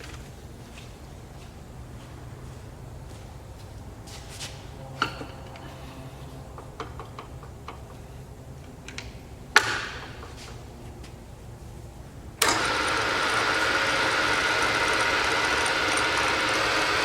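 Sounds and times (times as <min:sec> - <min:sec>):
low steady machine hum: 0:00.0 - 0:17.0
metal clanks and clicks: 0:06.5 - 0:10.6.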